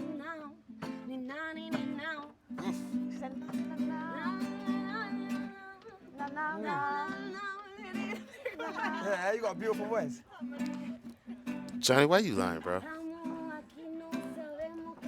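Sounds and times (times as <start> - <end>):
person singing with vibrato: 0.0 - 9.0, 12.4 - 15.0
acoustic guitar: 0.0 - 15.0.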